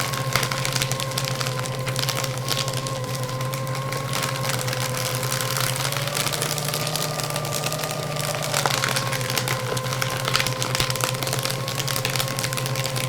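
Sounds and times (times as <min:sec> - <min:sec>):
paper shredder running: 0:00.0 - 0:13.0.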